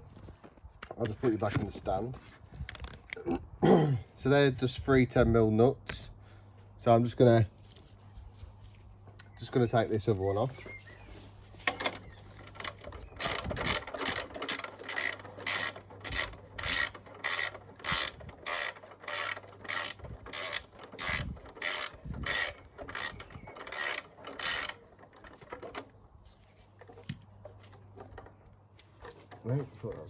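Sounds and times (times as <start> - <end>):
ratchet wrench clicking: 12.5 - 24.8.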